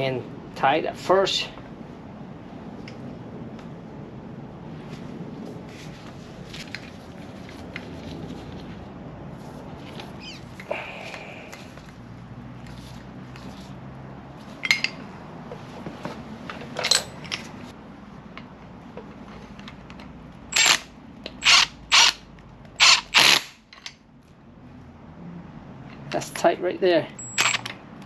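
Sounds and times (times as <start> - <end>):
metal parts clicking and knocking: 14.6 - 15.0, 16.5 - 17.6
power tool bursts: 20.5 - 22.2.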